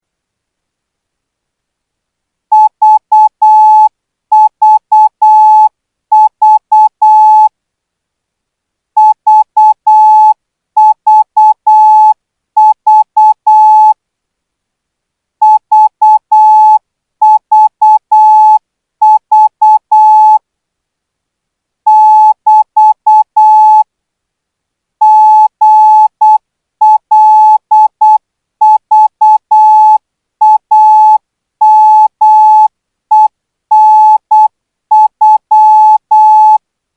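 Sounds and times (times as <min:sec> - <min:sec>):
morse code beeps: 0:02.6 - 0:07.5, 0:09.0 - 0:14.0, 0:15.4 - 0:20.4, 0:21.9 - 0:23.8, 0:25.0 - 0:36.6.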